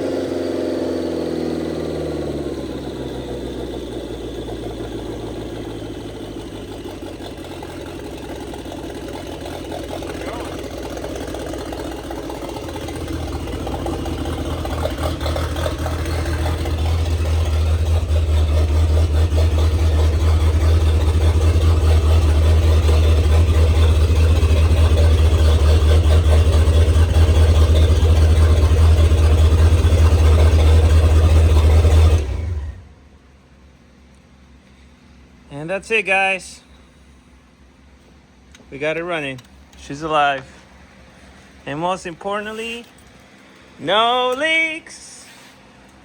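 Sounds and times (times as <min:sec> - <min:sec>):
car engine droning: 0:00.0 - 0:33.7.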